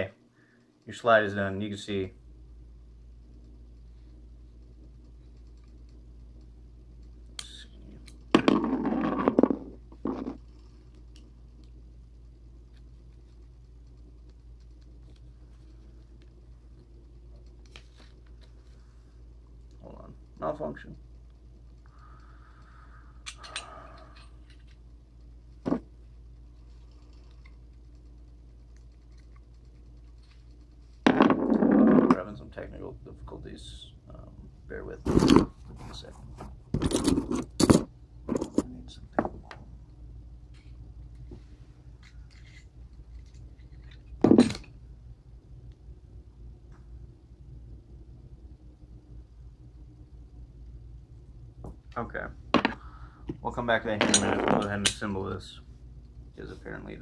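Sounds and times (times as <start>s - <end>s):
low steady hum: 0.0s - 57.0s
pistol parts rattling and scraping: 35.0s - 38.8s, 41.9s - 44.8s, 53.8s - 55.2s.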